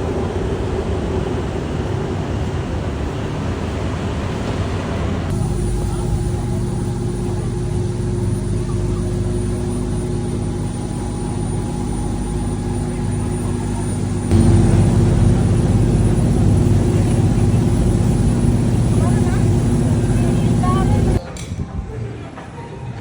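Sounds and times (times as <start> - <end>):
vehicle engine running: 5.1 - 21.2.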